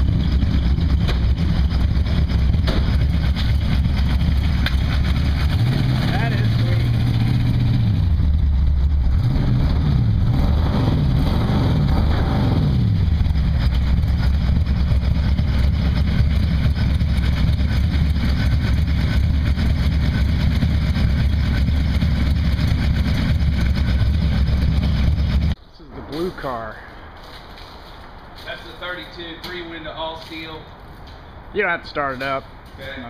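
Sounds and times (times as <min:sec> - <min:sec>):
car engine revving and idling: 0:00.0 - 0:25.6.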